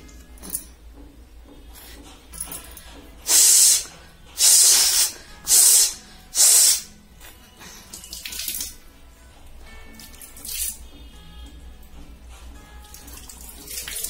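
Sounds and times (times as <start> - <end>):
air blown out through nose: 3.3 - 6.9.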